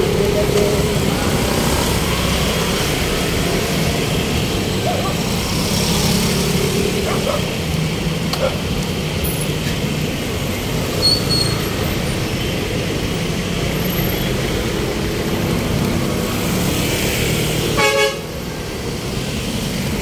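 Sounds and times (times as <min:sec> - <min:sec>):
road traffic: 0:00.0 - 0:20.0
vehicle horn toot: 0:17.8 - 0:18.2.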